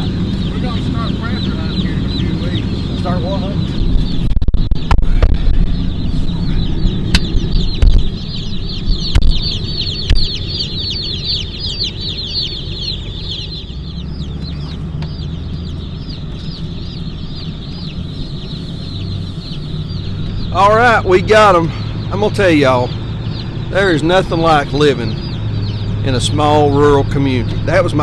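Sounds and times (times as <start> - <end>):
chicks peeping: 0.0 - 28.0
low rumble: 0.0 - 28.0
sharp knocks: 7.1 - 8.3, 8.9 - 10.6.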